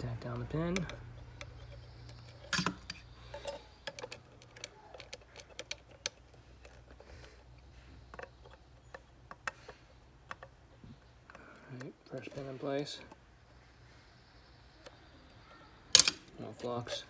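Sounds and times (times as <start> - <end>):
low steady hum: 0.0 - 17.0
small tool clicks and taps: 0.7 - 12.3.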